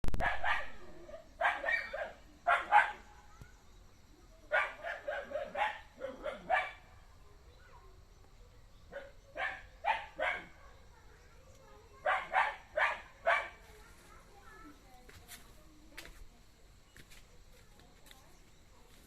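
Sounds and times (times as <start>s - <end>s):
animal barking calls: 0.2s - 3.2s, 4.5s - 7.1s, 8.9s - 10.9s, 12.0s - 13.7s.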